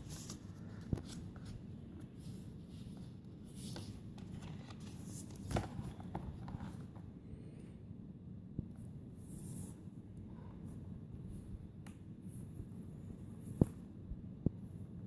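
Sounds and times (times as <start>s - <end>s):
paper rustling: 0.0s - 7.0s
low steady background rumble: 0.0s - 15.0s.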